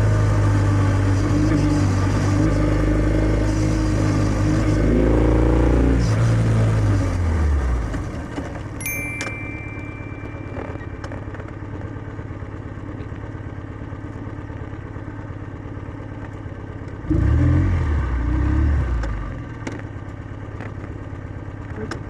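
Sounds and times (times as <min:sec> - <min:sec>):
motorcycle engine idling: 0:09.6 - 0:17.0, 0:19.4 - 0:22.0.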